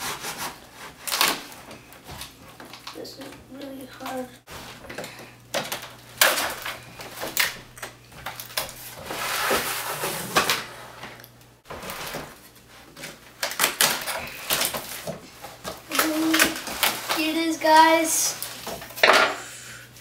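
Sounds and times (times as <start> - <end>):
cardboard rustling and tearing: 0.0 - 3.0, 11.7 - 18.6.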